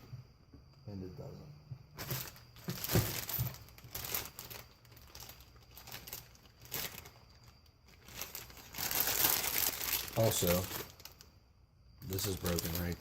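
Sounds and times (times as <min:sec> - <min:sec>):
hardware parts rustling and clicking: 0:02.0 - 0:11.2, 0:12.1 - 0:13.0.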